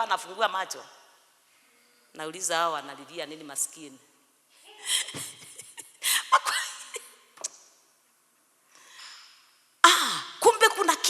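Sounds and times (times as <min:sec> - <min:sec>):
faint breath: 0:08.7 - 0:09.4.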